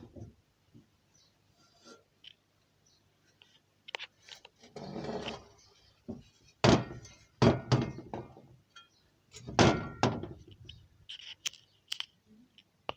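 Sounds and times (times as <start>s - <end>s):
hard knocks and thuds: 6.1s - 8.4s, 9.5s - 10.4s.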